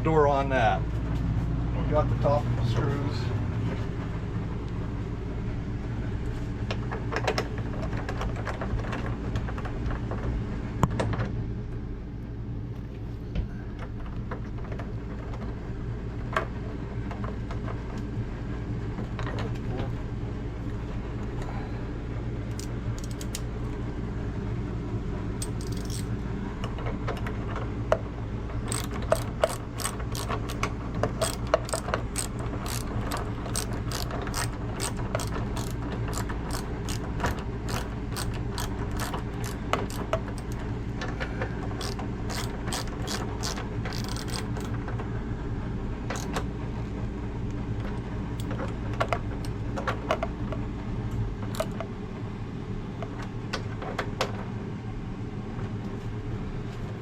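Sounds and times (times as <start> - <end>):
steady low hum: 0.0 - 57.0
socket ratchet clicking: 22.5 - 23.4, 25.4 - 26.1, 28.7 - 40.6, 41.8 - 44.7, 46.1 - 46.4, 51.5 - 51.8.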